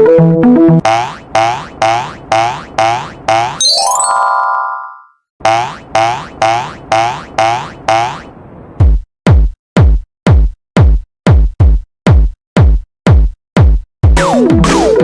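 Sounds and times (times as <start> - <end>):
deep drum machine kicks: 8.8 - 14.2.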